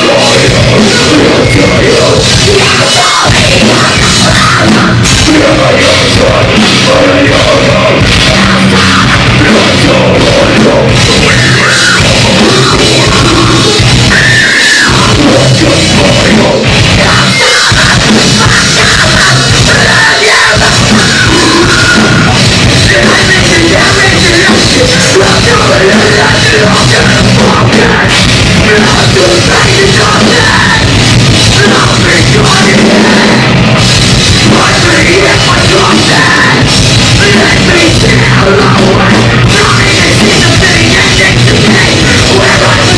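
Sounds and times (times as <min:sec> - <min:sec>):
screamed vocals: 0:00.0 - 0:33.5, 0:34.2 - 0:42.9
bass guitar: 0:00.0 - 0:42.9
distorted guitars: 0:00.0 - 0:42.9
pounding drum kit: 0:00.0 - 0:42.9.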